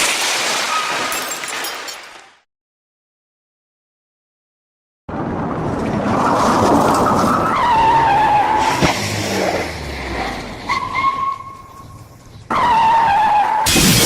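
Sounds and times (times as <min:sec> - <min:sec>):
car tyres skidding and squealing: 0:05.8 - 0:14.0.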